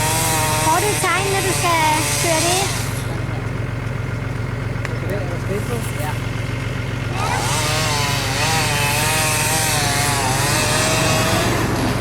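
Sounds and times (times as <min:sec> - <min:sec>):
chainsaw cutting wood: 0:00.0 - 0:03.4, 0:07.0 - 0:12.0.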